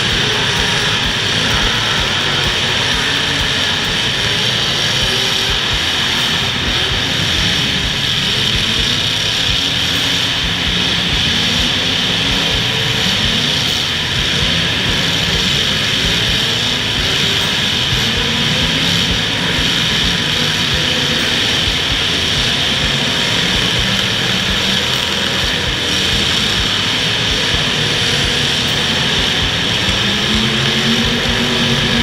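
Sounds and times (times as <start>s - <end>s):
unmuffled car engines revving: 0.0s - 32.0s.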